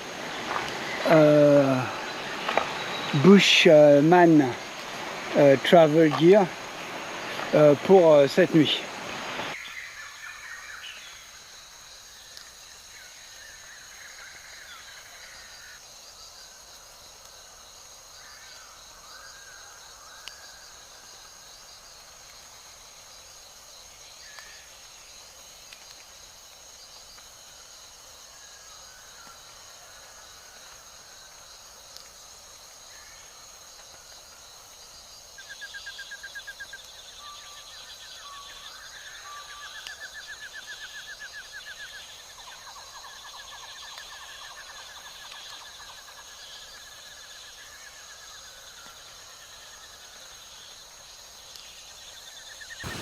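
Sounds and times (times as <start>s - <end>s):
high insect drone: 0.0s - 53.0s
bird chirps: 1.0s - 3.3s, 52.8s - 53.0s
rapid trilling call: 52.8s - 53.0s.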